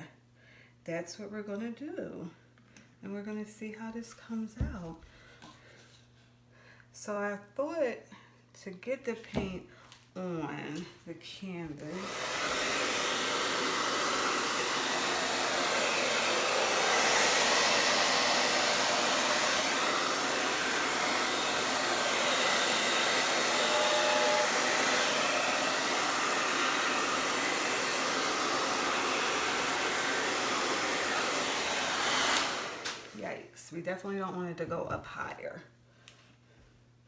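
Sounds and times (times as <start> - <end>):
hair dryer running: 11.6 - 33.4.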